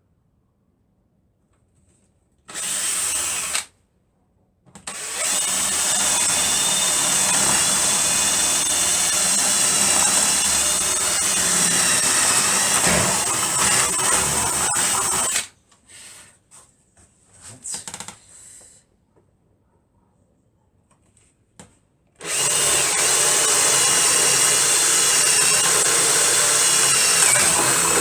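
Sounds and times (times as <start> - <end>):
electric drill boring into wood: 2.5 - 3.7, 4.9 - 15.5, 22.2 - 28.0.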